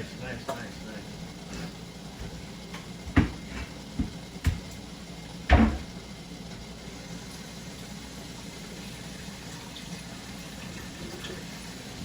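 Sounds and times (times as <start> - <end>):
kitchen things knocking and clunking: 2.2 - 4.8, 5.5 - 5.9.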